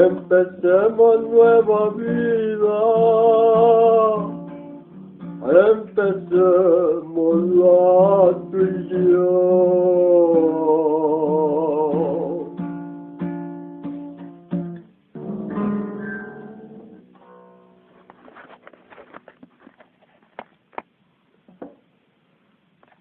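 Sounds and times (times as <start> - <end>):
man singing with vibrato: 0.0 - 4.6, 5.4 - 12.8
strummed acoustic guitar: 0.0 - 20.4.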